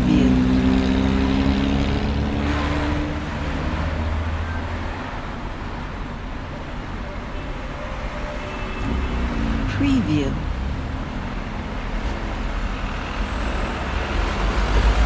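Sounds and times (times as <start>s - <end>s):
passing cars rushing: 0.0s - 7.0s, 8.0s - 15.0s
vehicle engine hum: 0.0s - 7.8s.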